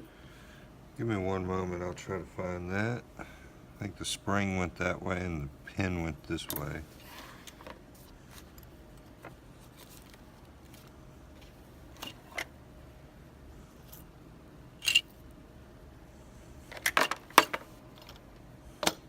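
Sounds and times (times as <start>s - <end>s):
metal lock parts clicking: 14.8s - 15.2s.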